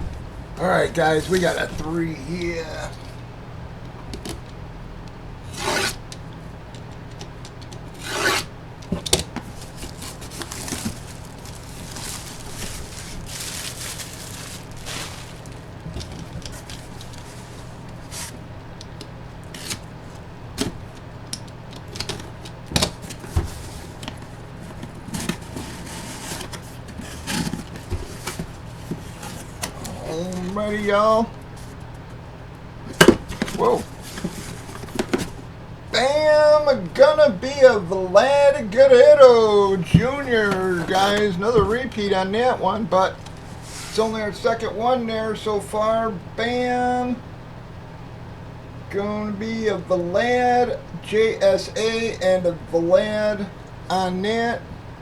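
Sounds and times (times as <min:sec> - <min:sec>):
packaging rustling: 0:06.8 - 0:32.2, 0:32.8 - 0:35.5, 0:39.8 - 0:42.0, 0:43.1 - 0:44.1.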